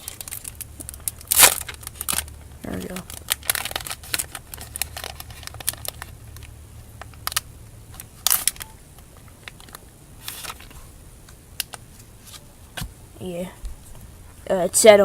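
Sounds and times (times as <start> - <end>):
foil wrapper crinkling: 0.0 - 10.8
trading cards rustling: 0.0 - 10.9
steady low hum: 0.0 - 15.0.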